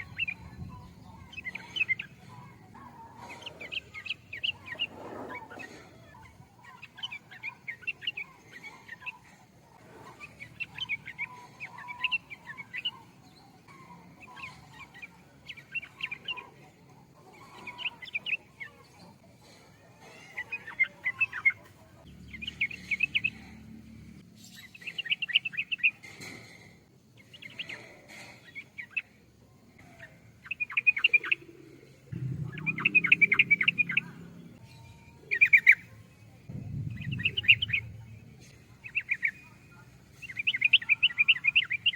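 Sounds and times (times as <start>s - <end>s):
bird chattering song: 0.0s - 19.2s, 29.8s - 41.9s
low rumbling noise: 32.1s - 34.7s, 36.4s - 40.1s.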